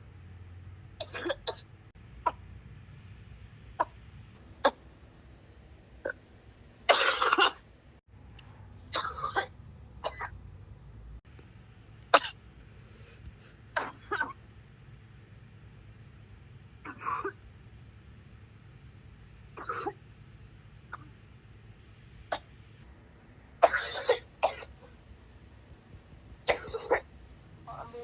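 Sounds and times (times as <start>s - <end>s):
person coughing hard: 6.9s - 7.6s, 26.5s - 27.0s.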